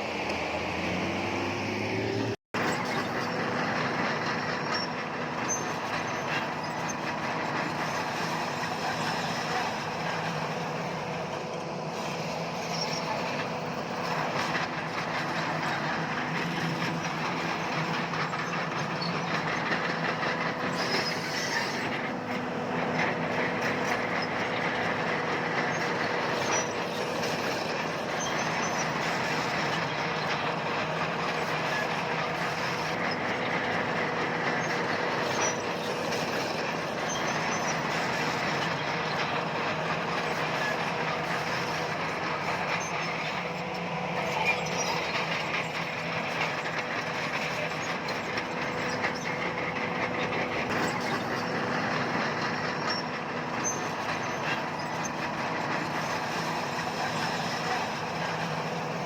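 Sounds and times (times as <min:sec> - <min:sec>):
bulldozer diesel engine: 0:00.0 - 0:59.0
crawler tracks clattering: 0:02.6 - 0:59.0.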